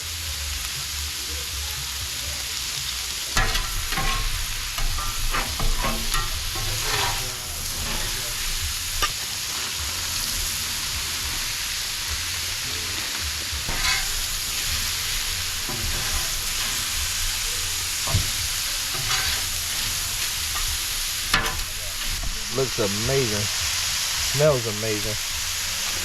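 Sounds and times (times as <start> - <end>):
food sizzling in oil: 0.0 - 26.0
metal spatulas scraping griddle: 3.4 - 12.1, 12.8 - 23.4.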